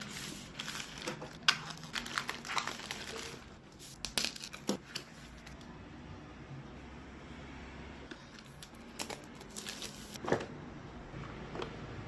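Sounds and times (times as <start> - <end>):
packaging crinkling and rustling: 0.0 - 5.1.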